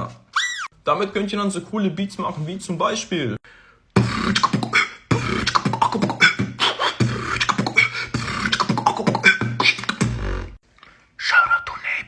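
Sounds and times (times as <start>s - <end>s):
human beatbox beat: 4.0s - 10.6s.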